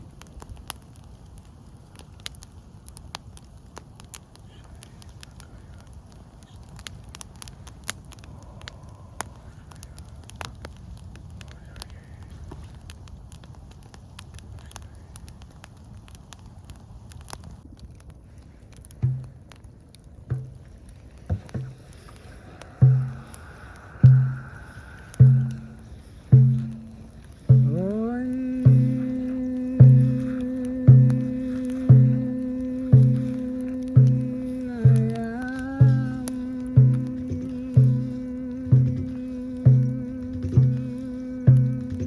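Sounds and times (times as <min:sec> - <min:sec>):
crackles and clicks: 0:00.0 - 0:42.0
steady low rush: 0:07.6 - 0:10.9, 0:20.2 - 0:42.0
deep plucked notes: 0:27.6 - 0:42.0.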